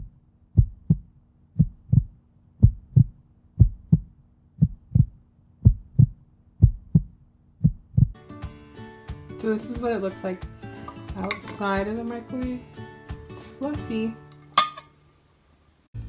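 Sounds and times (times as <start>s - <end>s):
heartbeat thumps: 0.0s - 8.2s.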